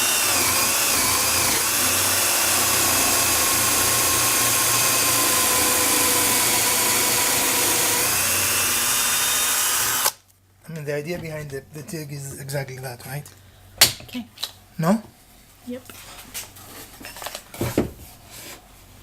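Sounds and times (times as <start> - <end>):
electric drill boring into wood: 0.0 - 10.2.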